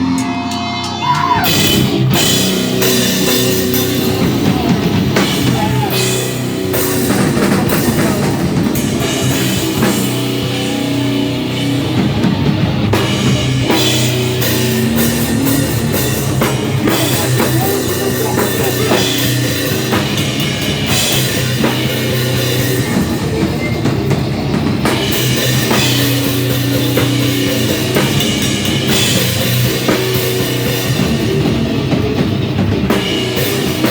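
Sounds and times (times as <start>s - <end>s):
heavy rock band playing: 0.0s - 33.9s.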